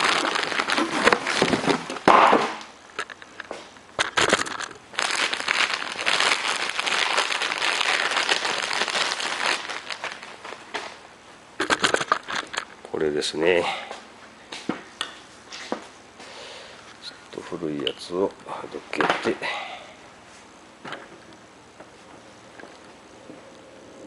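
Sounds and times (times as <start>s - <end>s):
packaging crinkling: 0.0s - 11.0s, 11.6s - 12.8s.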